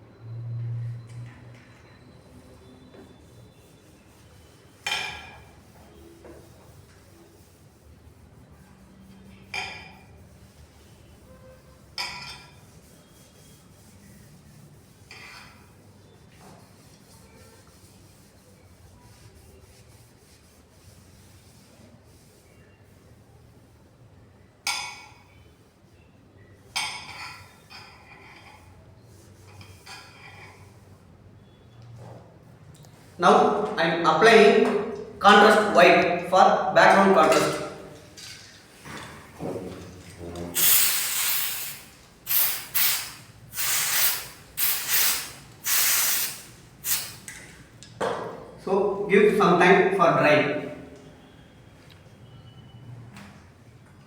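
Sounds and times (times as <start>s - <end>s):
aerosol spray can hissing: 40.6s - 47.3s.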